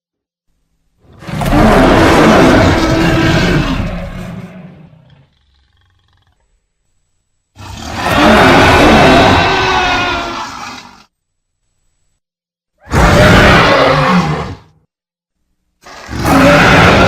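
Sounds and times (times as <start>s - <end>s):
monster roar: 1.2s - 6.4s, 7.6s - 11.0s, 12.8s - 14.8s, 15.9s - 17.0s.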